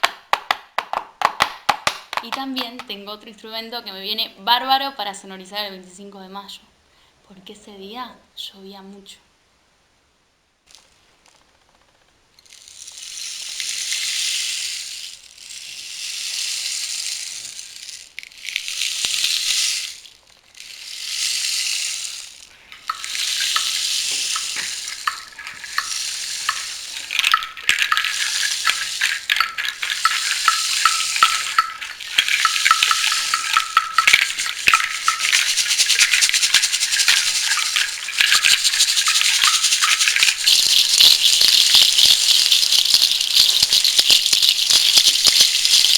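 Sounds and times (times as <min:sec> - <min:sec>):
rain stick beads hissing: 0:12.5 - 0:45.9.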